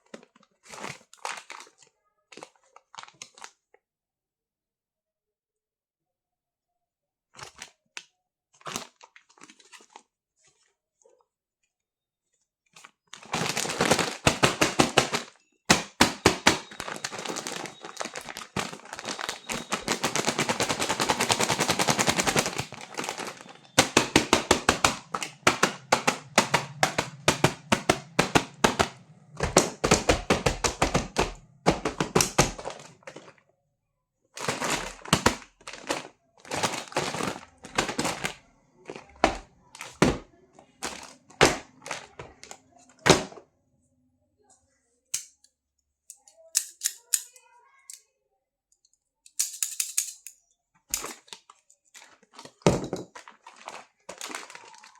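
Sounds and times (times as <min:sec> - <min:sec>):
packaging crackling: 0:13.1 - 0:33.4, 0:34.4 - 0:40.2, 0:51.0 - 0:54.9.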